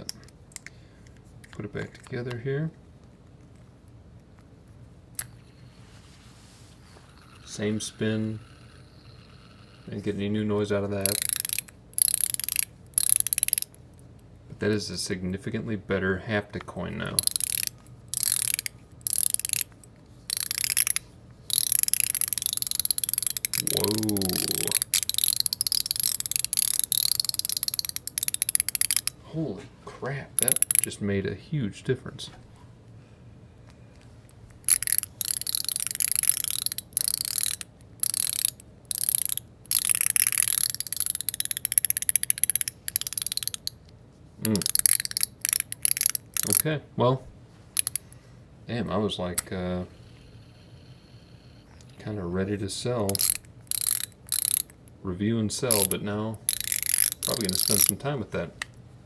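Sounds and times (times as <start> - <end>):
fidget coin ratcheting clicks: 5.2 - 5.6, 7.0 - 10.0, 10.9 - 13.9, 17.0 - 29.2, 30.4 - 31.0, 34.6 - 46.6, 47.8 - 48.1, 53.0 - 55.0, 55.7 - 58.0.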